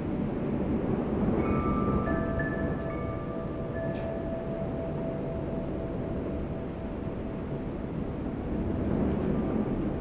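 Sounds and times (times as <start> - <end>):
wind blowing: 0.0 - 10.0
wind chime note: 1.4 - 7.8.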